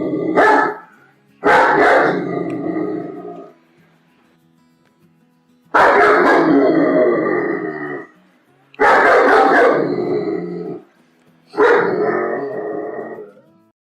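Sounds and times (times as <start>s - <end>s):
dog barking and growling: 0.0s - 3.5s, 5.8s - 8.1s, 8.8s - 10.9s, 11.5s - 13.5s.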